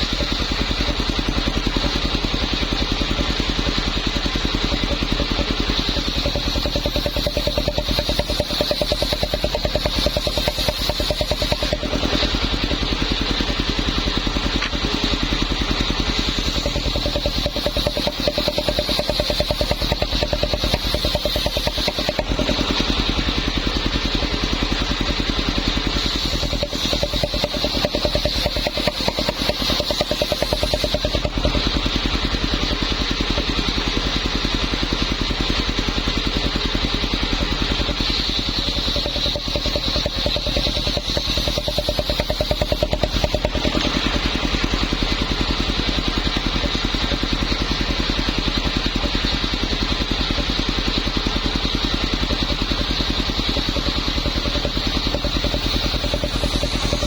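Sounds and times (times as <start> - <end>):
circular saw engine running: 0.0 - 57.0.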